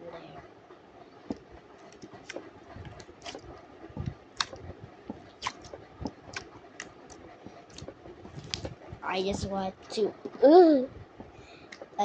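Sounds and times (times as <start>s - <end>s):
slime squished by hand: 1.3s - 8.8s.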